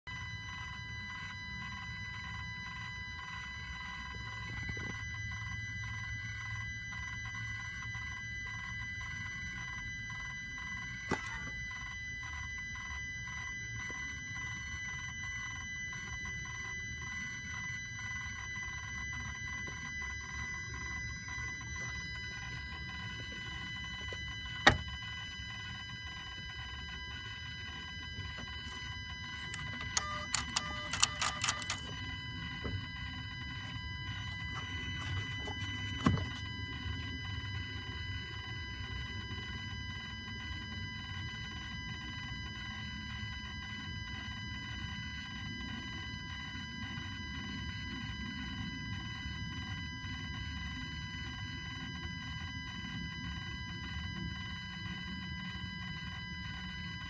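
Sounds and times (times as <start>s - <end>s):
high-pitched electronic whine: 0.1s - 57.0s
sharp clicks: 29.4s - 32.0s.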